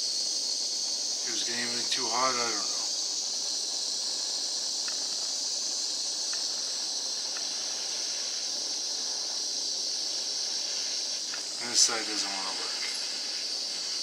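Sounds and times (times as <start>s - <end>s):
gas torch flame hissing: 0.0s - 14.0s
faint ticks: 4.8s - 5.0s, 6.3s - 6.5s, 7.3s - 7.5s.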